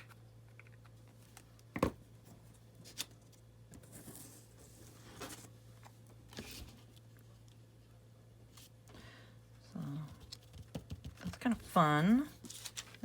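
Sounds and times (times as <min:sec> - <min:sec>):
low steady hum: 0:00.0 - 0:13.0
paper rustling: 0:12.3 - 0:13.0.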